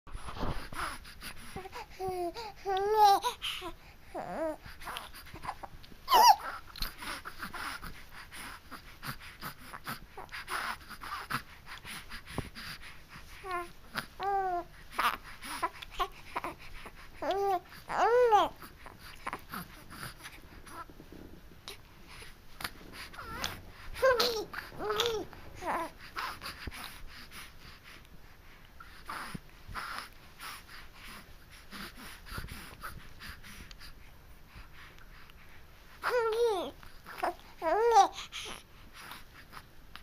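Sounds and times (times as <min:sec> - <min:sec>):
baby babbling: 0:01.6 - 0:06.6, 0:13.4 - 0:16.6, 0:17.2 - 0:20.9, 0:23.0 - 0:26.5, 0:36.0 - 0:38.6
baby squealing: 0:06.1 - 0:06.4.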